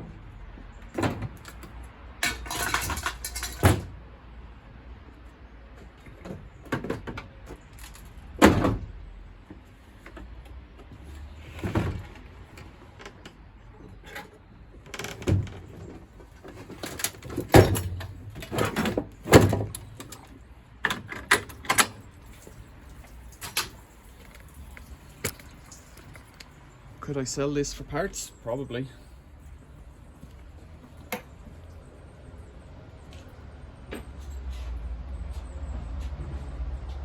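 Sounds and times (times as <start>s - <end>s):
metal parts knocking and clattering: 2.2s - 3.9s.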